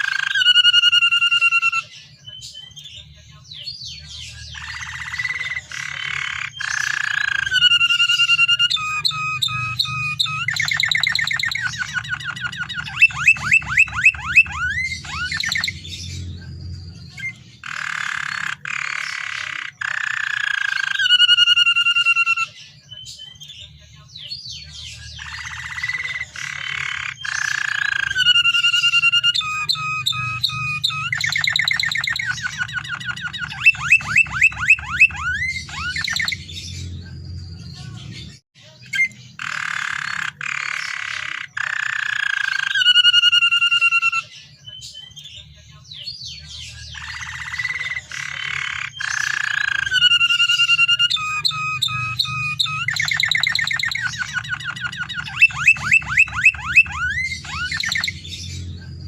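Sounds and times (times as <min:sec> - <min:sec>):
canary singing: 0:00.0 - 0:59.0
low hum: 0:57.0 - 0:59.0.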